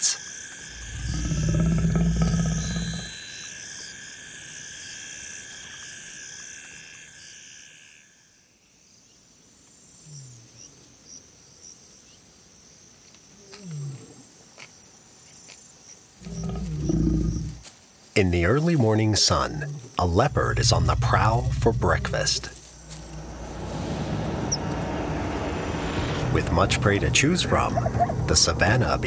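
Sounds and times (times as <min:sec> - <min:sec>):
insects chirping at night: 0:00.0 - 0:29.0
leopard growling: 0:00.7 - 0:03.1, 0:16.2 - 0:17.6, 0:19.0 - 0:24.9, 0:26.2 - 0:29.0
low falling grunts: 0:19.4 - 0:29.0.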